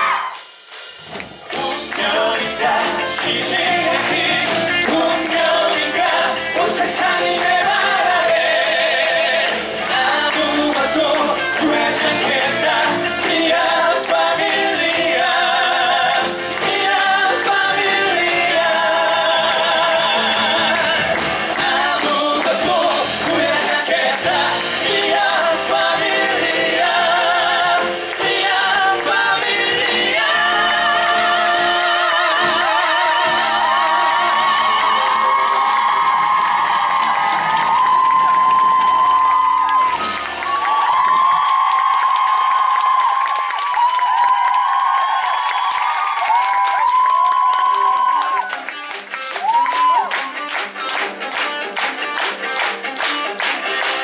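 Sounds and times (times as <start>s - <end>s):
musical accompaniment: 0.0s - 54.0s
person singing with vibrato: 1.5s - 36.2s.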